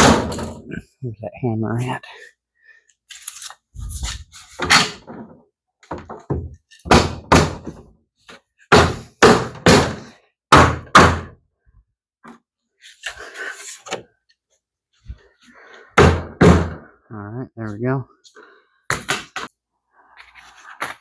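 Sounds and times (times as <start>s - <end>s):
hammer knocking on plastic: 5.9s - 7.8s, 8.7s - 11.3s.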